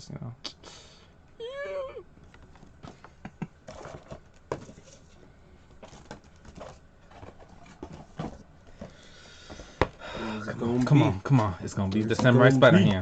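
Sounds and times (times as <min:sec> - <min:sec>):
packaging rustling: 0:03.7 - 0:09.7.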